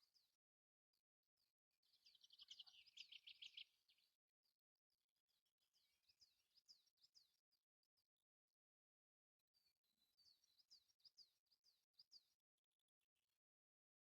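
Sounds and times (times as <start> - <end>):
faint birdsong chirps and trill: 0.0 - 14.0.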